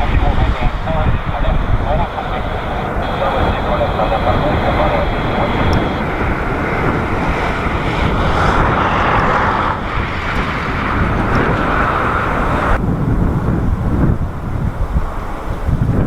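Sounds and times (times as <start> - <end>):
jet engines running: 0.0 - 15.8
wind rumbling on microphone: 0.0 - 16.0.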